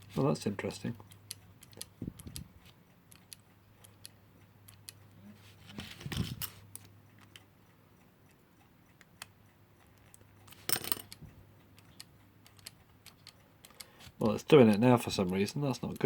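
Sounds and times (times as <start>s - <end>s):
electric clock motor hum: 0.0s - 16.0s
metallic clock clicks: 8.2s - 16.0s.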